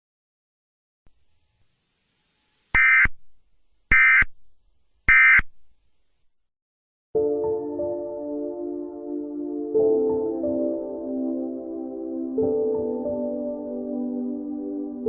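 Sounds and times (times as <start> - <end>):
music: 7.2 - 15.0.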